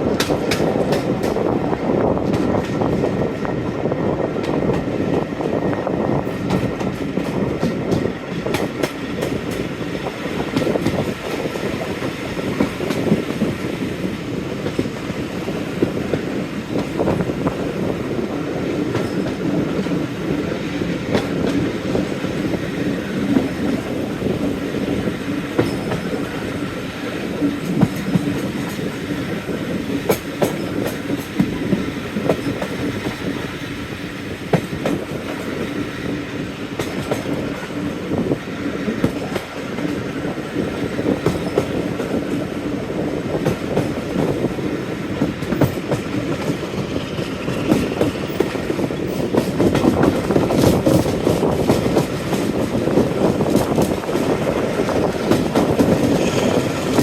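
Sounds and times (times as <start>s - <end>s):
diesel train rumble: 0.0s - 57.0s
wheels clicking over rail joints: 36.7s - 57.0s.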